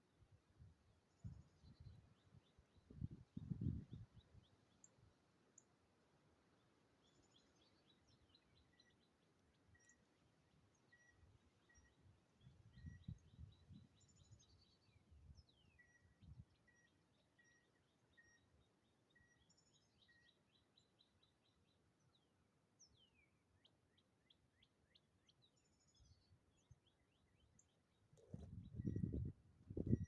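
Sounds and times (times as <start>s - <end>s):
faint birdsong: 0.0s - 30.0s.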